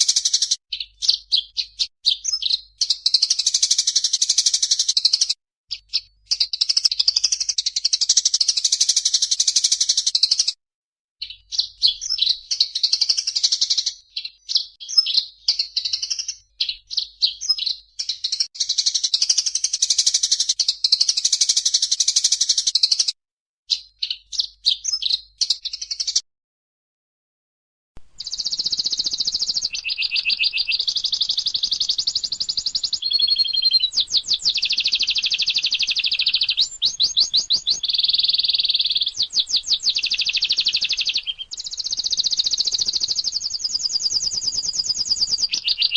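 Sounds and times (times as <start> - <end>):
songbirds chirping and trilling: 11.2 - 23.1, 28.0 - 45.9
dense bird trilling with rattles: 28.2 - 45.9.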